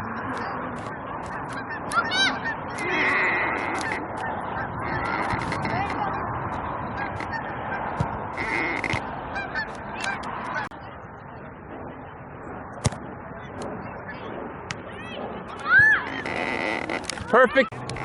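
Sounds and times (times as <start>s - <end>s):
geese honking: 0.0s - 10.8s, 15.6s - 18.0s.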